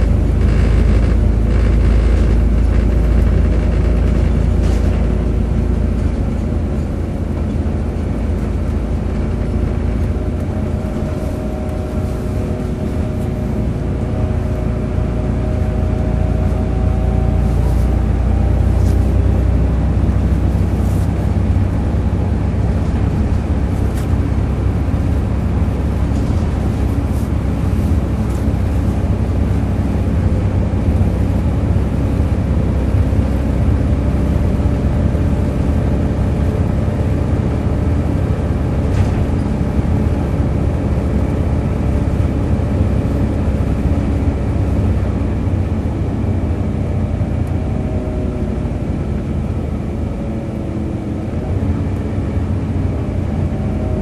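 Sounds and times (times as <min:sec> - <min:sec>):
bus diesel engine droning: 0:00.0 - 0:54.0.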